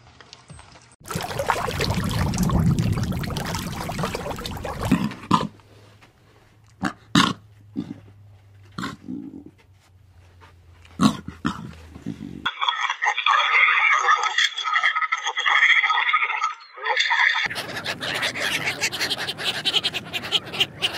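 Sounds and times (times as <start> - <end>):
rough animal call: 17.4 - 20.9.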